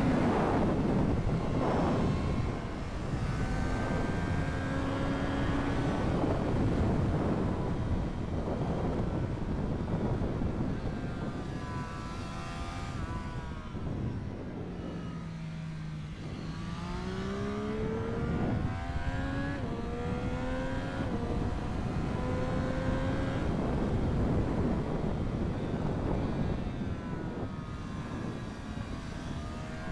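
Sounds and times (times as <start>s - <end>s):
wind over microphone: 0.0s - 29.9s
motorcycle engine revving: 15.0s - 29.8s.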